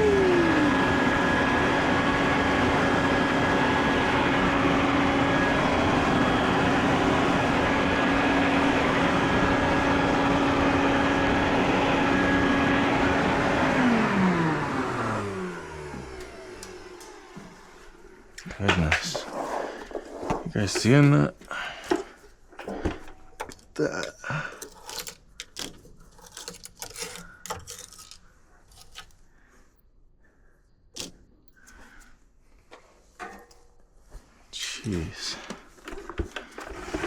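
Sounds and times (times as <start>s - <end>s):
electric motor whining: 0.0s - 20.0s.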